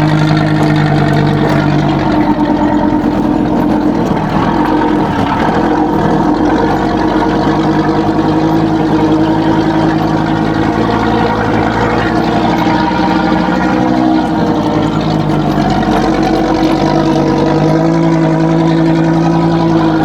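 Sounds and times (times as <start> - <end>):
diesel truck engine rumbling: 0.0 - 20.0.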